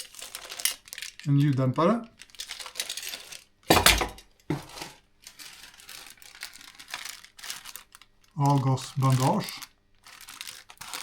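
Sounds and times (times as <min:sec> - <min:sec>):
packaging rustling: 0:00.0 - 0:11.0
heavy clunk of parts: 0:03.7 - 0:05.0.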